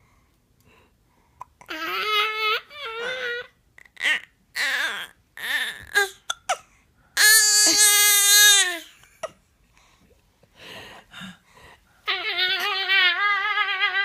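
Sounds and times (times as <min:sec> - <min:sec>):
high wailing cry: 0:12.1 - 0:14.0.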